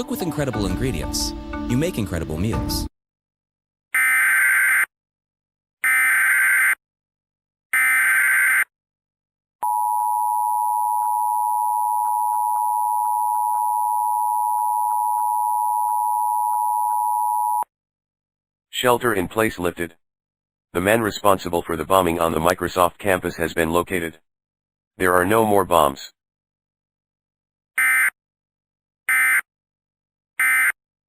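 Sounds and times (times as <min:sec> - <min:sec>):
two-tone alarm signal: 0:09.6 - 0:17.6.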